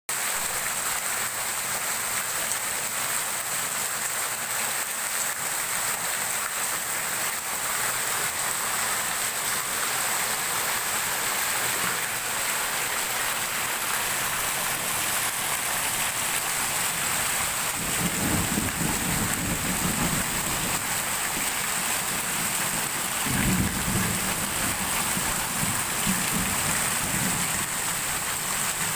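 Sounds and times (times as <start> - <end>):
heavy rain hiss: 6.2 - 28.9.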